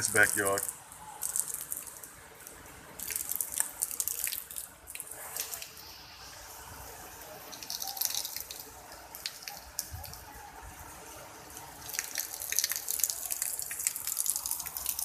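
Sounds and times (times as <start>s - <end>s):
steady hiss: 0.0s - 15.0s
water dripping and splattering: 0.0s - 15.0s.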